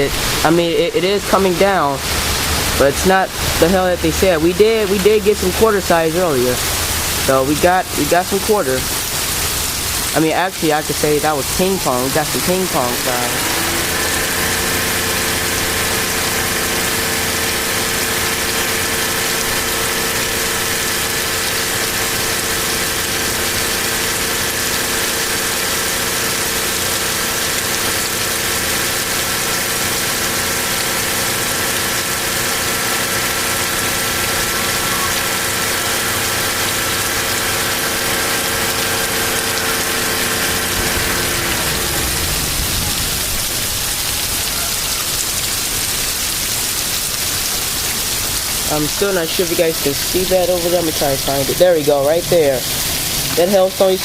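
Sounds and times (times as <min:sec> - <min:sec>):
car engine idling: 0:00.0 - 0:53.6
heavy rain hissing: 0:00.0 - 0:54.0.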